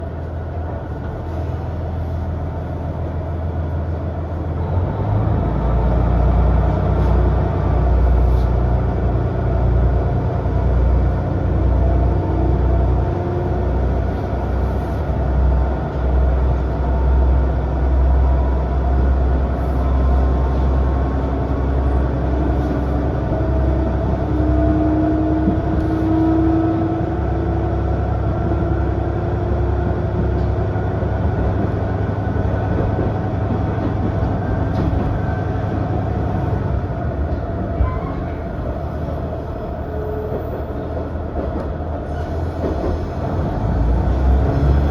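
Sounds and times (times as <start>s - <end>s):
diesel railcar engine rumble: 0.0s - 44.9s.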